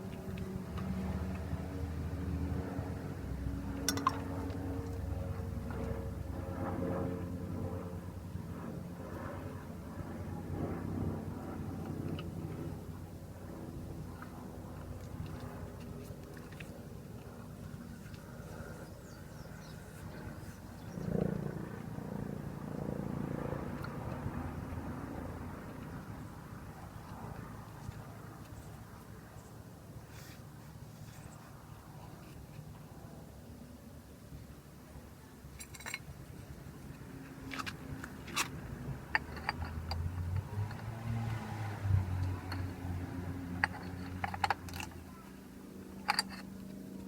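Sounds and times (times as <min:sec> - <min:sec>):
low mechanical hum: 0:00.0 - 0:47.0
metallic clink: 0:35.6 - 0:36.1, 0:46.0 - 0:46.5.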